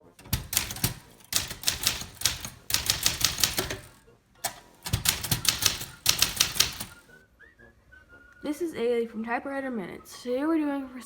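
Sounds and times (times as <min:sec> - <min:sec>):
typewriter key strikes: 0:00.0 - 0:07.0.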